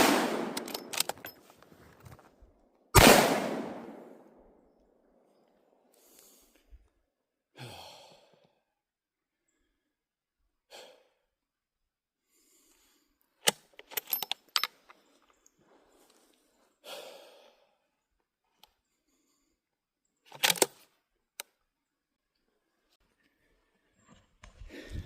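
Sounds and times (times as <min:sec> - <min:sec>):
handling clicks and knocks: 0:00.4 - 0:02.3, 0:13.4 - 0:15.0, 0:20.3 - 0:20.8.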